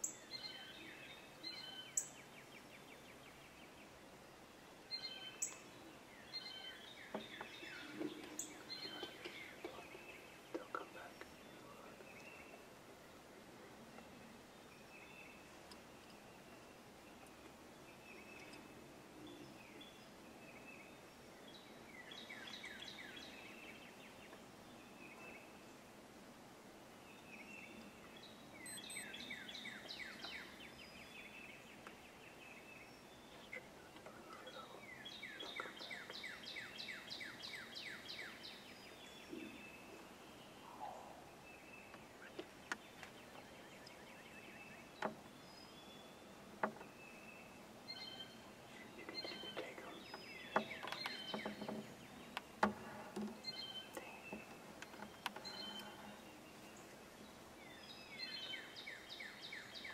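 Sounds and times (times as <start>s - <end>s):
songbirds singing: 0.0s - 59.9s.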